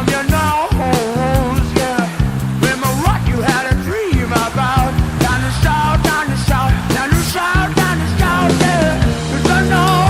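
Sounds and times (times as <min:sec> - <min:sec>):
drum beat: 0:00.0 - 0:10.0
guitar: 0:00.0 - 0:10.0
person singing: 0:00.0 - 0:10.0
rock music: 0:00.0 - 0:10.0.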